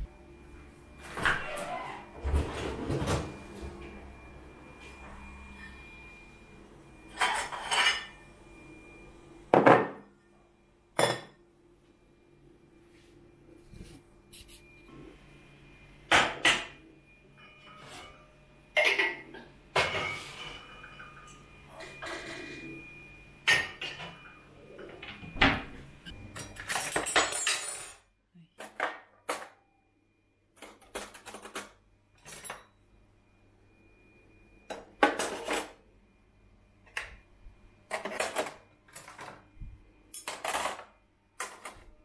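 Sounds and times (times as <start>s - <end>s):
dishes and cutlery clattering: 7.1s - 8.2s, 17.5s - 22.7s, 23.4s - 25.2s, 26.3s - 28.0s, 34.8s - 35.8s, 37.9s - 39.4s, 40.1s - 41.8s.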